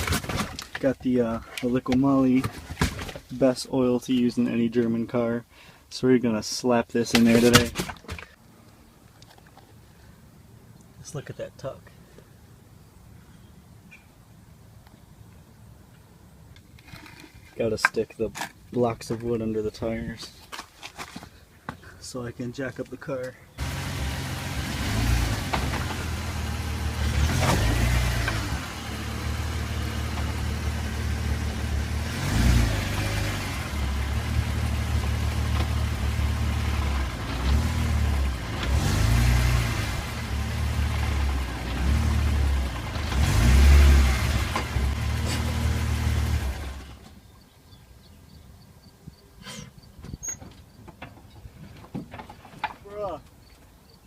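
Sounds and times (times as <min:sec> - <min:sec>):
car engine idling: 0:23.6 - 0:38.9.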